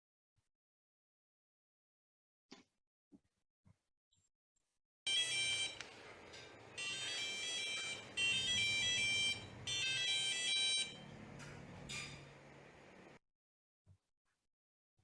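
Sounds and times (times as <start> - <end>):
electronic alarm beeping tune: 5.1 - 5.8, 6.8 - 11.1.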